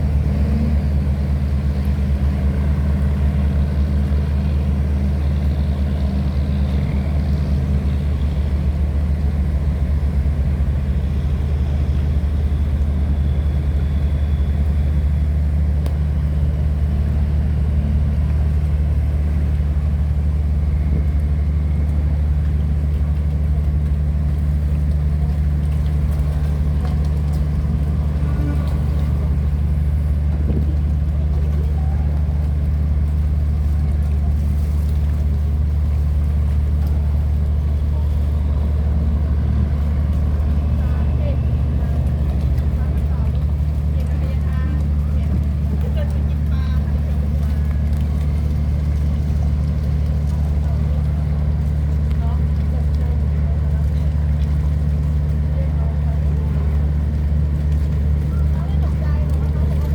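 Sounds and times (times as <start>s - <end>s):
tugboat diesel engine drone: 0.0s - 59.9s.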